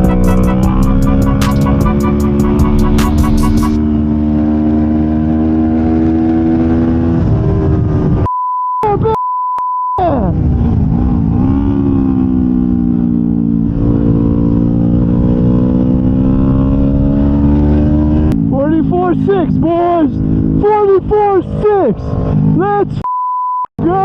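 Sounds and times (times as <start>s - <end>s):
motorcycle engine revving: 0.0s - 8.3s, 10.4s - 22.8s
steady high beep tone: 8.3s - 10.0s, 23.0s - 23.7s.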